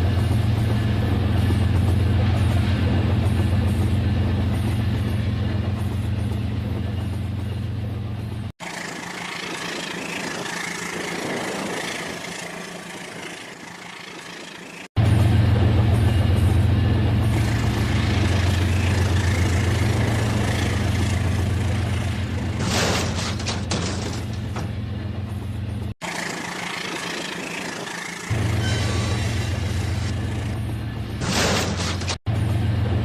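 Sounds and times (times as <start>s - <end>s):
toy train motor hum: 26.0s - 28.3s.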